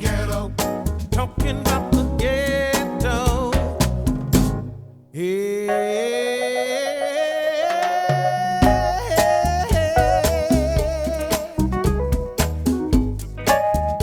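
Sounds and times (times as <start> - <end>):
song with drums and singing: 0.0 - 4.6, 7.1 - 13.2.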